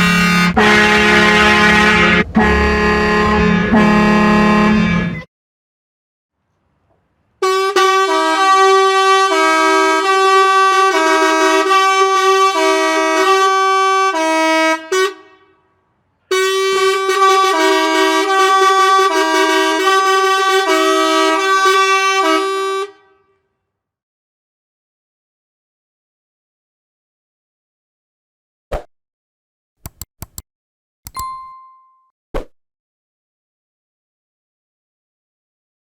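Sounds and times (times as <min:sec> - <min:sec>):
musical truck air horn: 0:00.0 - 0:05.3, 0:07.4 - 0:23.6.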